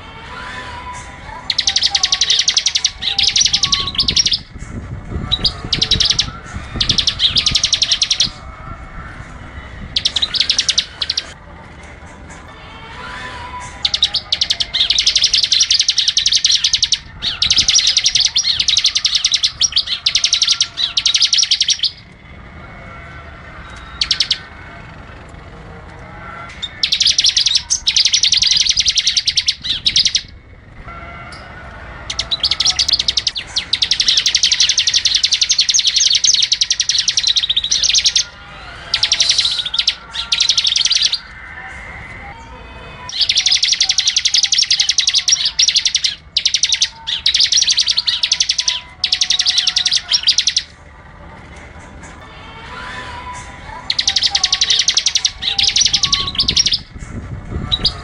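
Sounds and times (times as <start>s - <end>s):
songbird trilling: 1.5s - 4.5s, 5.2s - 8.5s, 9.9s - 11.4s, 13.7s - 22.1s, 23.8s - 24.6s, 26.5s - 30.4s, 32.1s - 41.4s, 43.1s - 50.7s, 53.9s - 56.9s, 57.7s - 58.0s.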